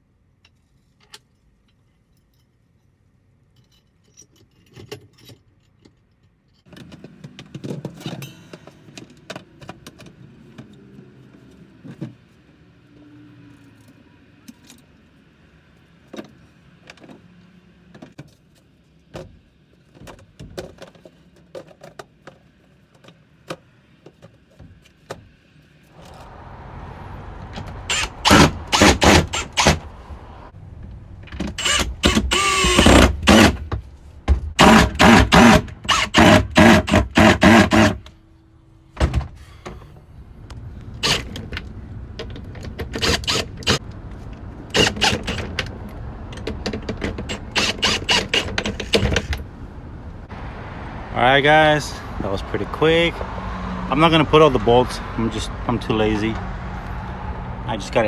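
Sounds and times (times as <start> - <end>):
metal parts clinking: 3.5 - 6.6
impact driver running bolts: 27.6 - 29.9, 31.4 - 33.6, 34.6 - 38.1, 41.0 - 41.4, 42.9 - 43.8, 44.7 - 45.6, 47.2 - 49.4.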